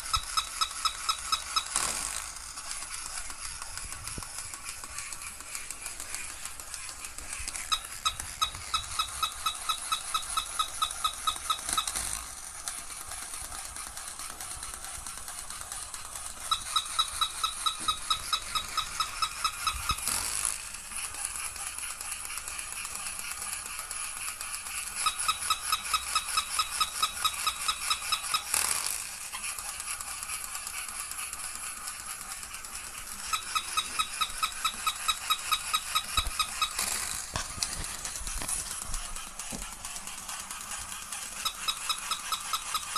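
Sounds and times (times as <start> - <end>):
rapid high chirps: 0.0 - 21.4, 31.8 - 42.9
toy motor whirring: 0.0 - 42.9.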